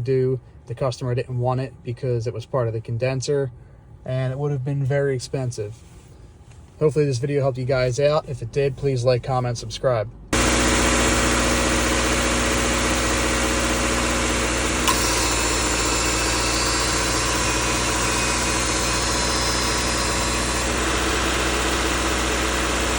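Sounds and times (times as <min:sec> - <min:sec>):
car engine idling: 0:10.1 - 0:22.9.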